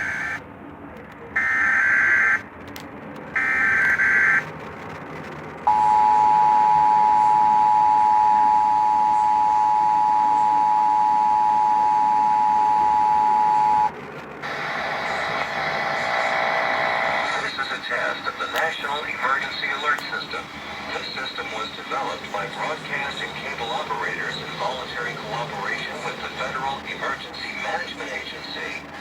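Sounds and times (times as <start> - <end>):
steady two-tone attention signal: 5.7 - 13.9.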